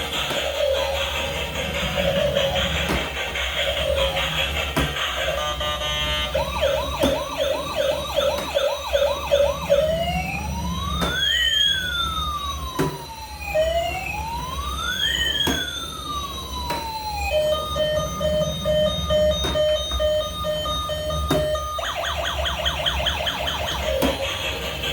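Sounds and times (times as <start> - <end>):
toy electronic siren: 0.0 - 24.9
steady pulsing beep: 17.3 - 24.9.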